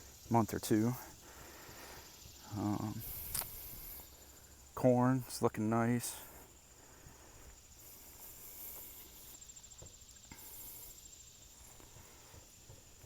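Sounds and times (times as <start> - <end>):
insects trilling: 0.0 - 13.0
soft footsteps: 6.4 - 13.0.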